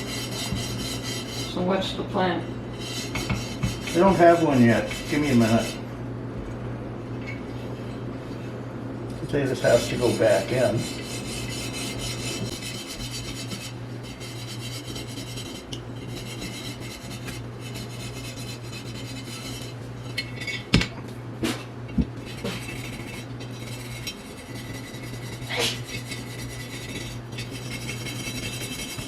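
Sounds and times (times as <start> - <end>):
scrubbing cast iron: 0.0 - 1.7, 2.7 - 5.8, 9.6 - 20.7, 22.2 - 29.0.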